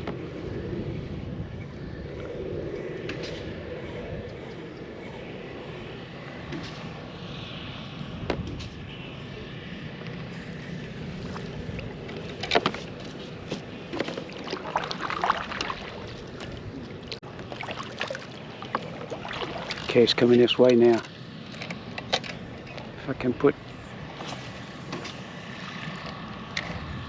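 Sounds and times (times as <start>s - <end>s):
wind noise: 0.0s - 20.7s, 21.4s - 27.0s
water lapping against kayak hull: 10.7s - 21.0s
water slaps and splashes: 11.2s - 20.9s.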